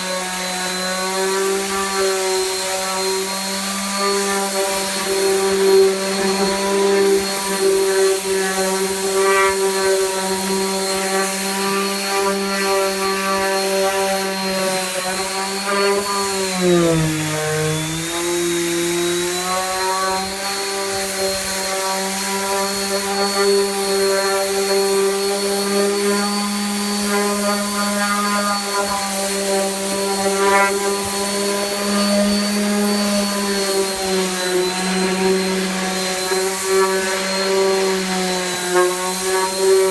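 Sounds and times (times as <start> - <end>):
electric sander running: 0.0 - 39.9.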